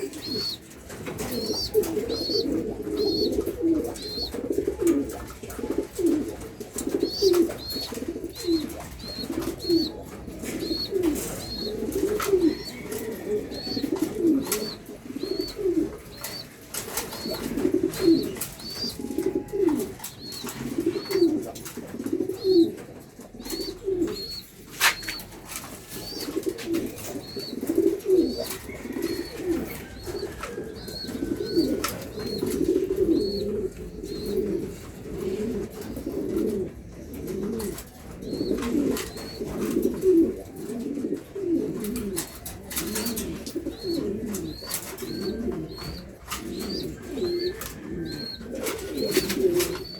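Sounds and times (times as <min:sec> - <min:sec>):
pigeons cooing: 0:00.0 - 0:49.9.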